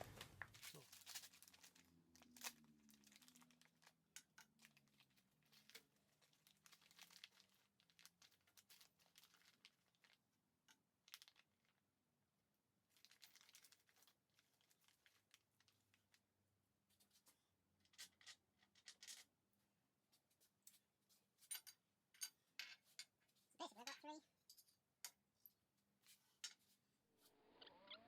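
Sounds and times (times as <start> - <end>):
plastic packet rustling and crinkling: 0.0 - 10.3, 10.9 - 11.8, 12.9 - 16.3.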